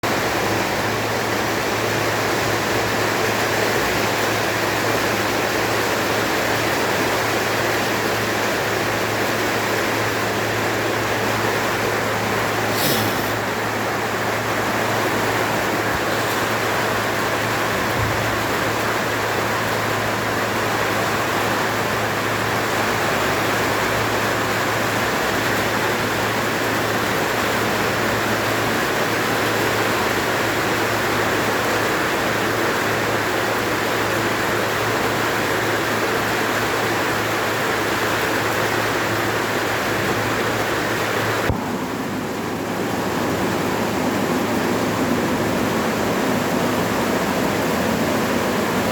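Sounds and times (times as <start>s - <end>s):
steady rain: 0.0s - 48.9s
low hum: 41.5s - 43.5s.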